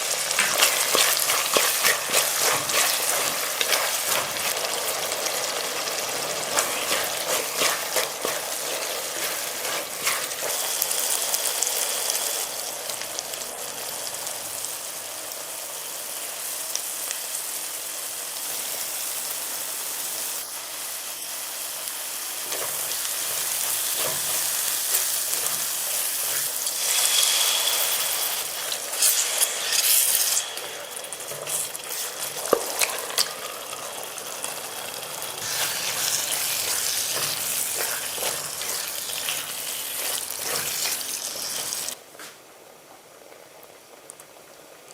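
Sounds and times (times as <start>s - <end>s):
spatula scraping pan: 0.0s - 11.2s, 22.4s - 33.3s, 35.4s - 42.0s
food sizzling in oil: 0.0s - 42.0s.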